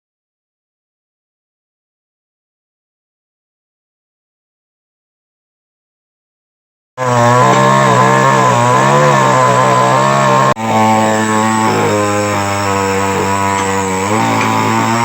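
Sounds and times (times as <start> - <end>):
chainsaw cutting wood: 7.0 - 15.0.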